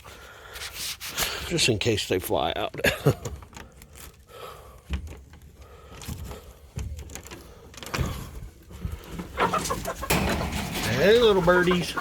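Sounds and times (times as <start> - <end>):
knocks and rattles of handling: 4.8 - 9.3.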